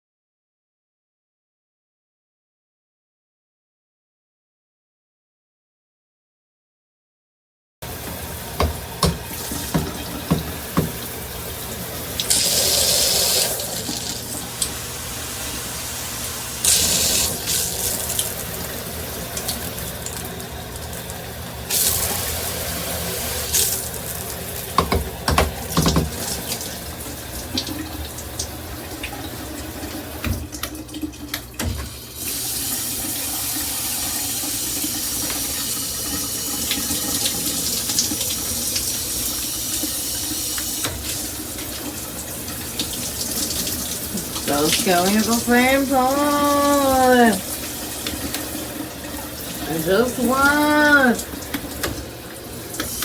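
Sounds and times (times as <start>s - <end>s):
shower water spraying: 7.9s - 28.7s, 32.0s - 53.0s.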